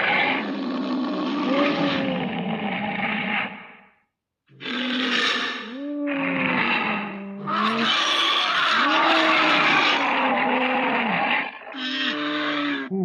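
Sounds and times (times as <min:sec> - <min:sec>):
raspy monster voice calls: 0:04.7 - 0:13.0.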